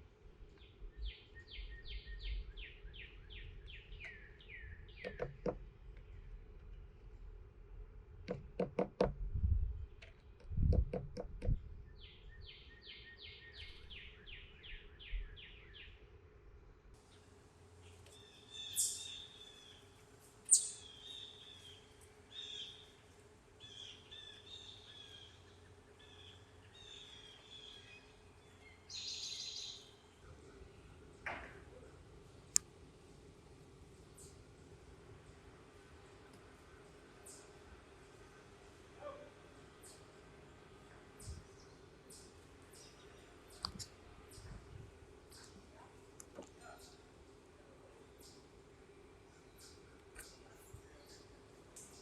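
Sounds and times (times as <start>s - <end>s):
songbird trill: 0.5s - 6.3s, 10.8s - 16.1s, 17.0s - 30.2s, 39.0s - 40.2s, 41.0s - 44.6s, 47.9s - 52.0s
sharp knocks and taps: 5.0s - 5.6s, 8.2s - 9.2s, 10.0s - 11.6s
bird chirps and calls: 18.2s - 19.8s, 20.5s - 21.8s.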